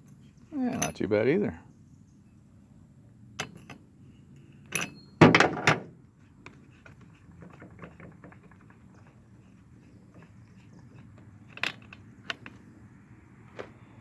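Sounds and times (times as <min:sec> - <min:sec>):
objects clattering: 0:06.8 - 0:12.6.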